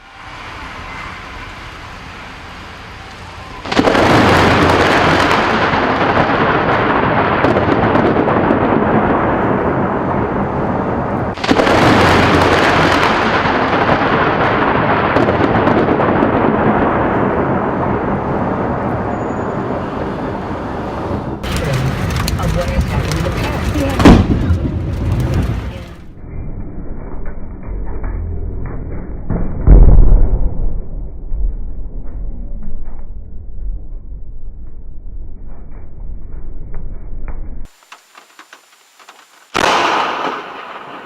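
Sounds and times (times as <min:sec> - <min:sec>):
rain hissing: 0:00.0 - 0:06.2, 0:21.4 - 0:26.0, 0:37.7 - 0:41.0
thunder cracks: 0:00.0 - 0:19.7, 0:21.4 - 0:26.1, 0:39.0 - 0:41.0.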